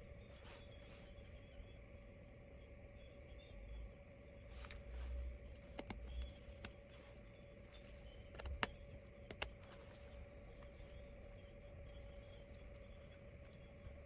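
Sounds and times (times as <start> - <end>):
faint steady hum: 0.0 - 14.0
small tools clicking and tapping: 5.5 - 6.9, 7.7 - 10.9.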